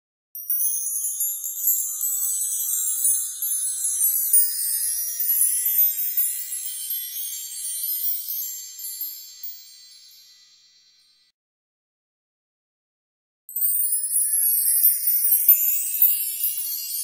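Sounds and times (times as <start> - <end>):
chimes tinkling: 0.4 - 11.3, 13.5 - 17.0.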